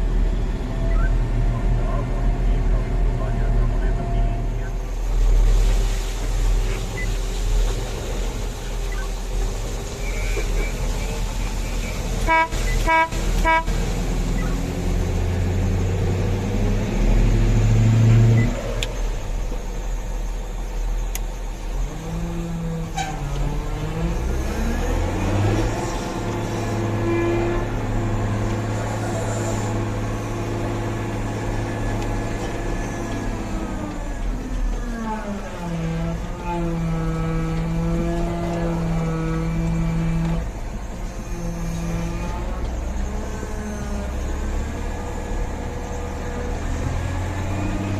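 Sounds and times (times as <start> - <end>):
diesel engines of heavy machinery: 0.0 - 47.9
short horn toots: 12.2 - 13.8.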